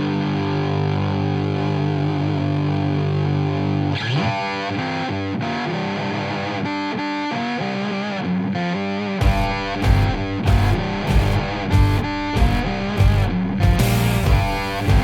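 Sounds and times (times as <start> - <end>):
distorted electric guitar: 0.0 - 15.0
drum hits: 9.2 - 15.0.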